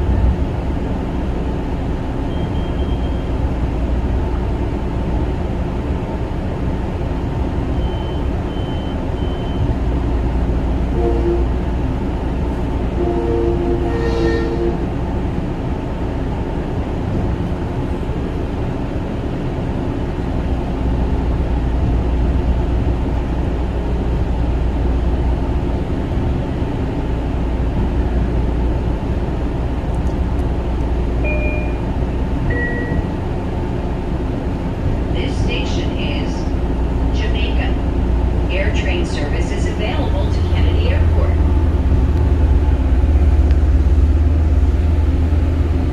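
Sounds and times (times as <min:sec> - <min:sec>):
electric train rumbling: 0:00.0 - 0:45.9
two-note train horn: 0:10.9 - 0:11.6, 0:13.0 - 0:14.9
short high beeps: 0:31.2 - 0:31.8, 0:32.5 - 0:33.1.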